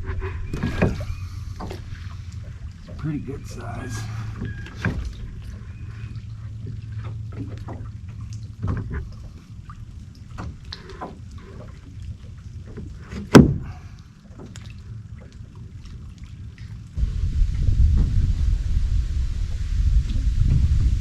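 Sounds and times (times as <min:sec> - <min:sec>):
knocks and bumps in boat: 0:00.0 - 0:14.8
steady low hum: 0:00.0 - 0:21.0.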